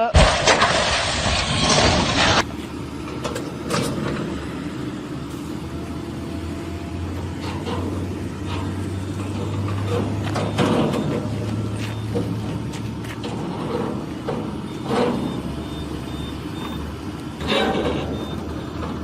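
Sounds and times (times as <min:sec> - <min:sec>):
large engine humming: 0:00.0 - 0:19.0
knocks and clanks: 0:07.4 - 0:15.4.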